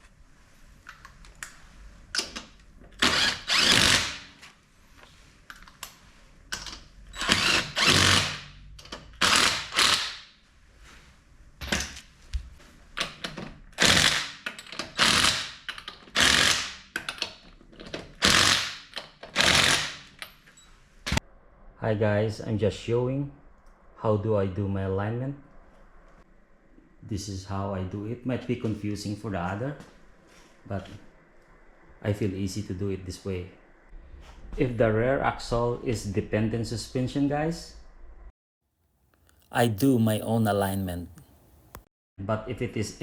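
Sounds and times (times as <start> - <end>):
impact wrench bursts: 3.0 - 4.3, 7.2 - 8.4.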